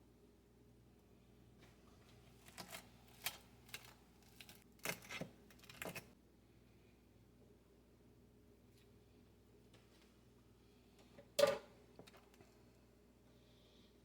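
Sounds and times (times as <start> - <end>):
faint steady hum: 0.0 - 14.0.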